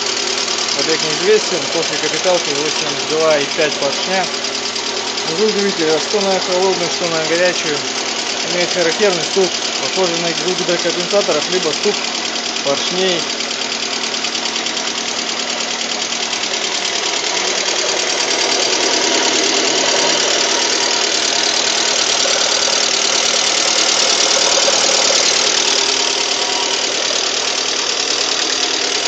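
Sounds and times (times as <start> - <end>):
car engine running with knock: 0.0 - 29.0.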